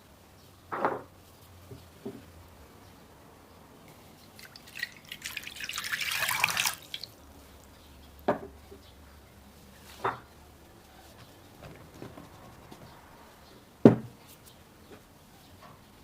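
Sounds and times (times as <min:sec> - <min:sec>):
water pouring into a bowl: 0:04.4 - 0:07.2.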